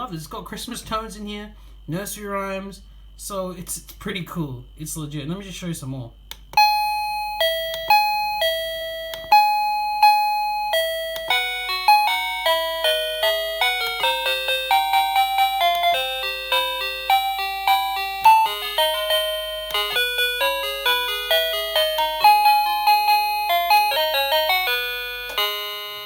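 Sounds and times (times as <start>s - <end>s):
doorbell ding-dong chime: 6.6s - 26.0s
electronic doorbell melody: 6.6s - 26.0s.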